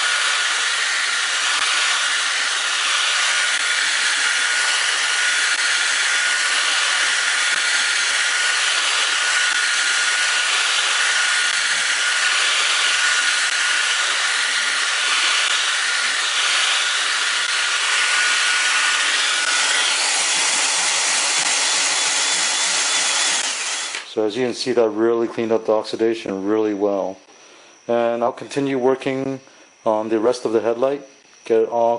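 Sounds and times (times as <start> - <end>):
cordless drill running: 0.0 - 24.1
thin steady whine: 2.7 - 31.9.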